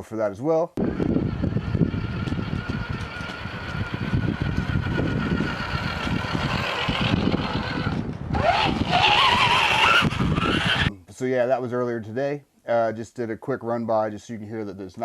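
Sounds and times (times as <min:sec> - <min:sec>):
rc car electric motor whine: 0:00.8 - 0:10.9
rough rumble: 0:00.8 - 0:10.9.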